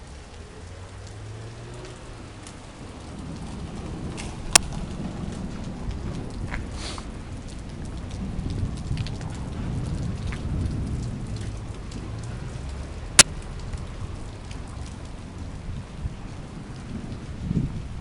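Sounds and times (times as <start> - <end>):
rain falling: 0.0 - 18.0
drops ticking close by: 7.4 - 15.4.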